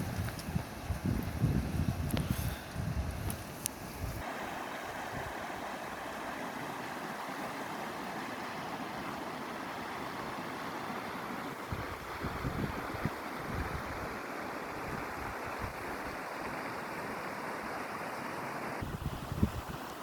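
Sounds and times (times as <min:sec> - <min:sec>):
wind buffeting microphone: 0:00.0 - 0:04.2, 0:11.7 - 0:14.1, 0:18.8 - 0:19.8.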